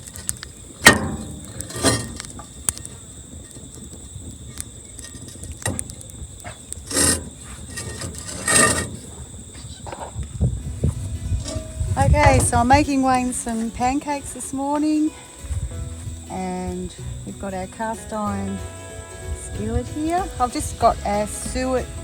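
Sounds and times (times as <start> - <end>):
handling knocks: 0.0 - 22.0
scraping rustles: 0.0 - 22.0.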